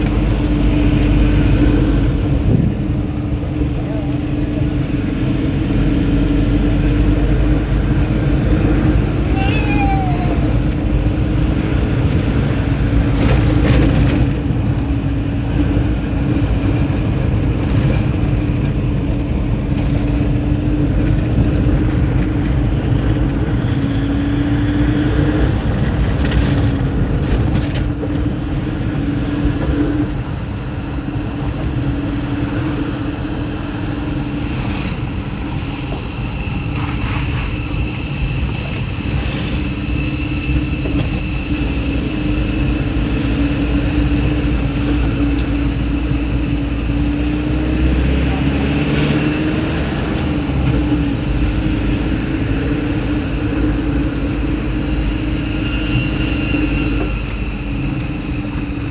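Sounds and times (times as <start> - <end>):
vehicle engine and road rumble: 0.0 - 58.9.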